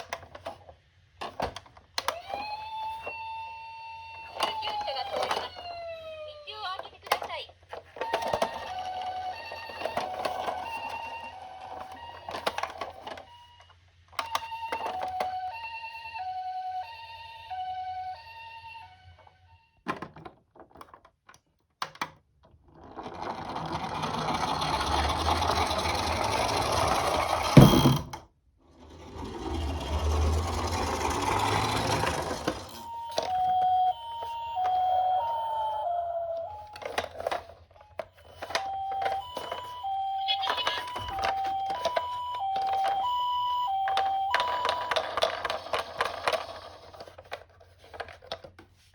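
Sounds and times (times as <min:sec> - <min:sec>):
toy cars rolling down slope: 0:00.0 - 0:18.1, 0:22.4 - 0:28.0, 0:28.6 - 0:48.7
hi-lo ambulance siren: 0:02.0 - 0:19.8, 0:28.8 - 0:47.1
loud knock: 0:27.6 - 0:28.2.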